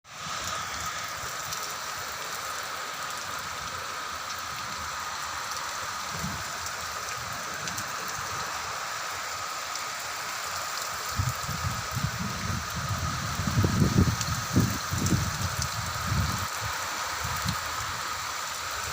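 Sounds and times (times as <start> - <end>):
rain falling: 0.0 - 18.9
wind gusts on microphone: 11.1 - 18.0.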